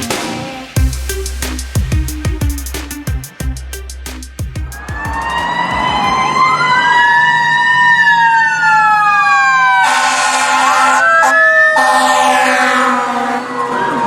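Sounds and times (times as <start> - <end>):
two-tone siren wailing: 5.0 - 14.0
harsh buzzing horn blast: 9.8 - 13.5.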